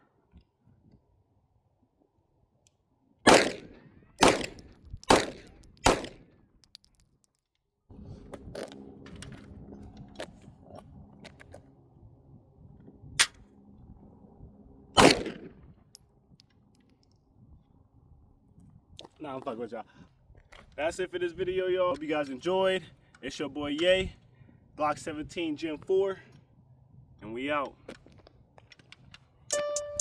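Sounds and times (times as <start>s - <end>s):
pistol shots: 3.3s - 6.2s, 15.0s - 15.5s.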